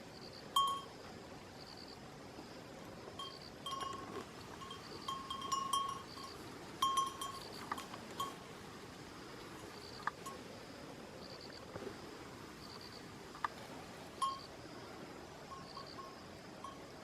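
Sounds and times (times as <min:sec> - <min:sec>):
goat bells clinking: 0:03.2 - 0:08.5.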